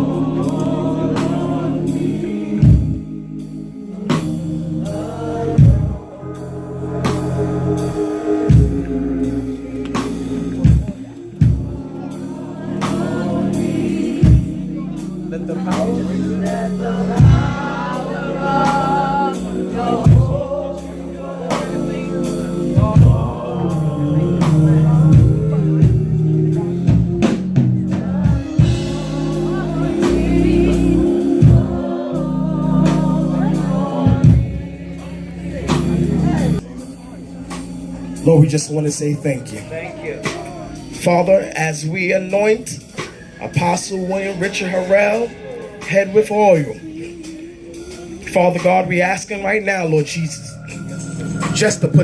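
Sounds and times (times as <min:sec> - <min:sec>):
cymbals: 0:00.0 - 0:52.0
gospel singing over chords: 0:00.0 - 0:52.0
drum kit hits: 0:07.0 - 0:36.6.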